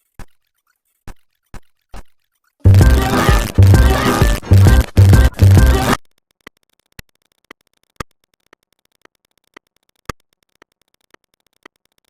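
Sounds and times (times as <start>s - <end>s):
steady ticking: 2.6s - 12.0s.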